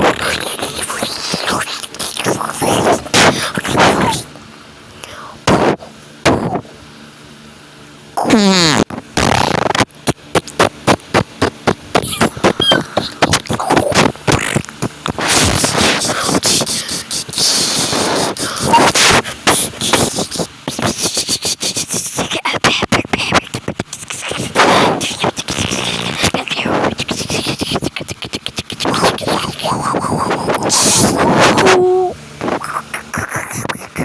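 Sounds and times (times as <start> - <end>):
mouth-made clicks pops and puffs: 8.6 - 26.4.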